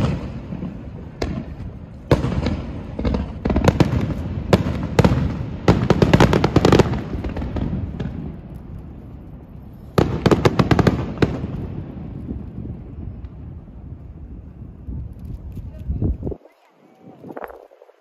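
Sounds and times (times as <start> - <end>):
fireworks bangs and crackles: 0.0 - 17.9.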